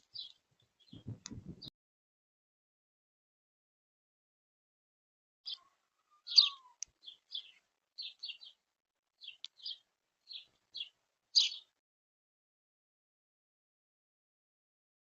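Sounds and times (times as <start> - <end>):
small bird chirping: 0.0 - 1.7, 5.5 - 8.6, 9.2 - 11.8.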